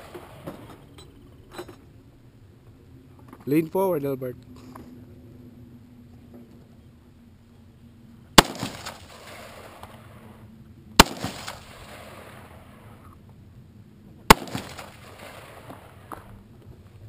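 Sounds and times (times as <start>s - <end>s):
gunshots with rolling echo: 8.4s - 9.4s, 11.0s - 12.5s, 14.3s - 15.8s.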